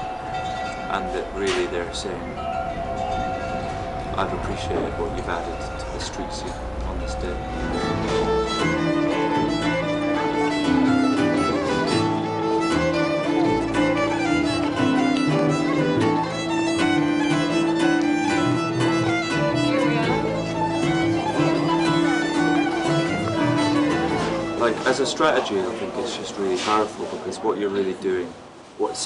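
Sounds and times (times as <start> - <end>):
fiddle playing long notes: 3.4 - 26.0
instrumental band music: 7.5 - 25.1.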